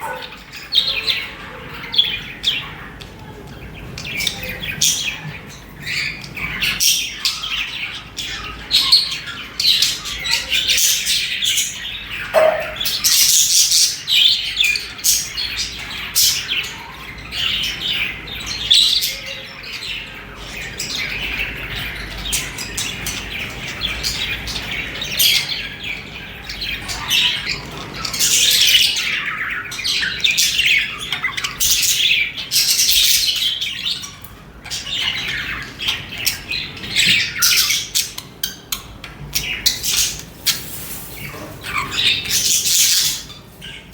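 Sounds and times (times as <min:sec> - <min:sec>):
budgerigars chirping and warbling: 0:00.0 - 0:43.9
budgerigar squawks: 0:12.3 - 0:13.0.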